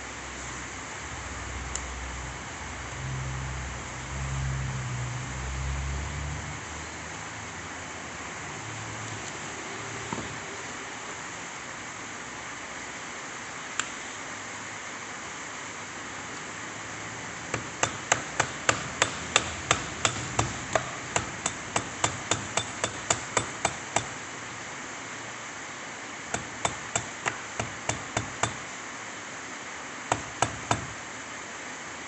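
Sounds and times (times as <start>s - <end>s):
hand hammer blows: 17.5s - 24.2s, 26.3s - 28.6s, 30.1s - 31.0s.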